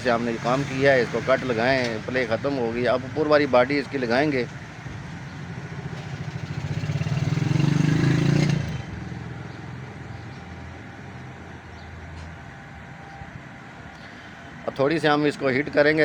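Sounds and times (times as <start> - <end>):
vehicle engine passing by: 0.0 - 11.4.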